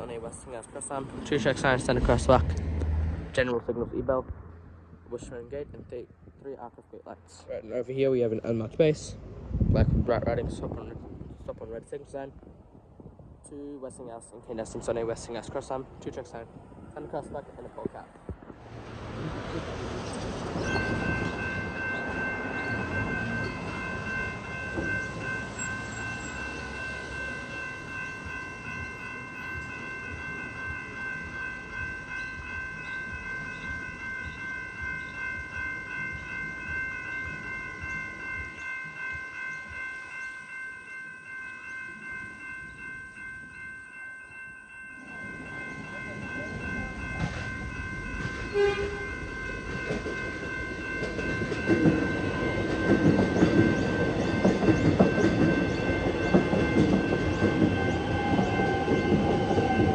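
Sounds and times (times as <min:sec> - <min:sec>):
level crossing warning bell: 0:00.0 - 0:02.4, 0:19.1 - 0:59.9
train rumbling past: 0:00.0 - 0:05.9, 0:13.8 - 0:44.0, 0:44.7 - 0:59.9
train wheels clacking on rail joints: 0:46.6 - 0:59.9.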